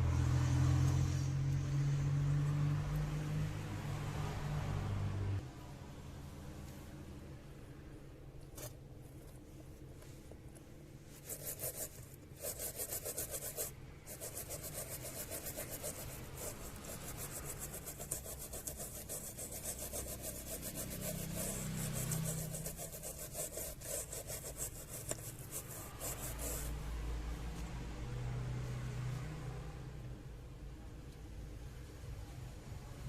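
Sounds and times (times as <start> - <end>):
brush scrubbing circuit board: 11.2 - 26.8.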